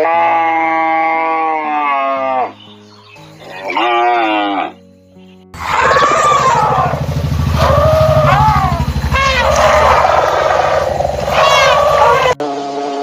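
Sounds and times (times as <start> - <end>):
background music: 1.5 - 13.0
sheep bleating: 3.5 - 4.8, 8.2 - 10.1, 11.2 - 12.4
cow mooing: 3.6 - 4.8, 5.6 - 12.4.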